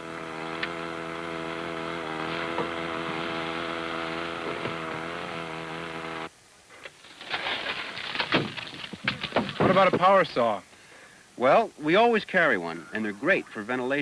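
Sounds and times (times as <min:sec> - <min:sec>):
small engine running: 0:00.0 - 0:06.3.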